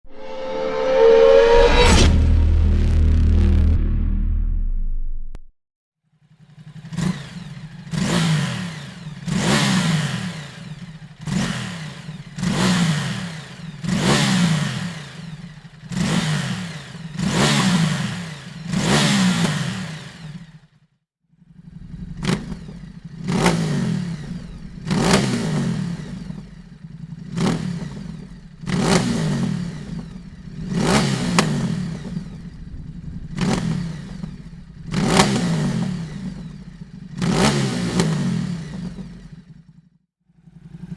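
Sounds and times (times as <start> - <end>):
sharp throttle blips: 0.0 - 5.4
motorcycle engine revving: 6.2 - 20.8, 21.4 - 40.9.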